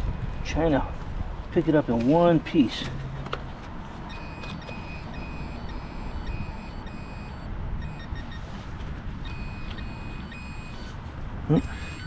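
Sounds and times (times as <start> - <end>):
metal detector beeping: 4.1 - 8.5, 9.2 - 12.0.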